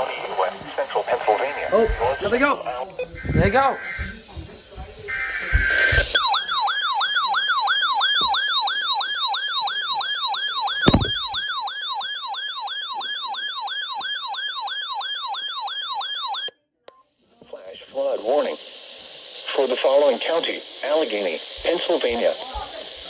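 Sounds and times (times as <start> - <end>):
data burst tones: 0.9 - 4.3, 5.1 - 6.9, 10.8 - 11.6
electronic yelp siren: 3.0 - 4.2, 5.1 - 16.5
thump: 10.8 - 11.4.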